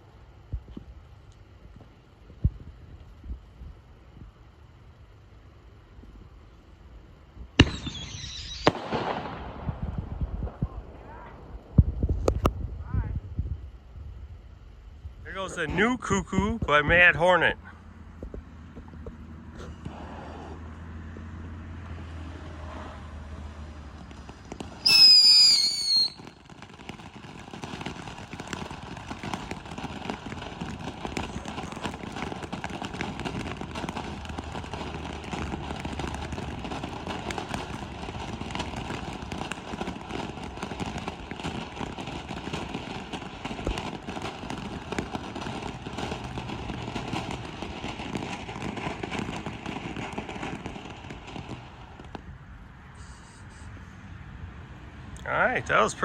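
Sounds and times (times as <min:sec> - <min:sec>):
firework crackling spray: 0:00.0 - 0:13.0, 0:13.6 - 0:54.1
firework whistle: 0:07.6 - 0:09.6, 0:24.3 - 0:51.7, 0:52.8 - 0:54.0.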